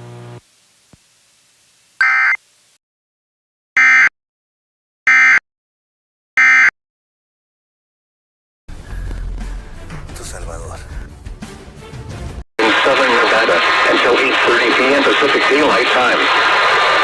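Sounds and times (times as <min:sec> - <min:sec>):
short electronic data buzzes: 0:02.0 - 0:02.4.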